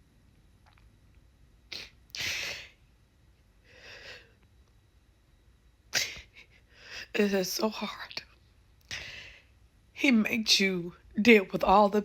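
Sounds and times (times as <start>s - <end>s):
woman sniffling: 1.7s - 2.8s, 6.0s - 7.2s.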